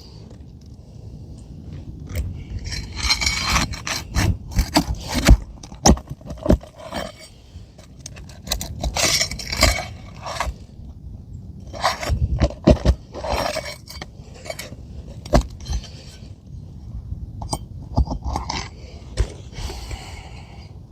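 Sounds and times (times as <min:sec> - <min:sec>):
shingles scraping: 0:02.1 - 0:10.7, 0:11.6 - 0:16.3.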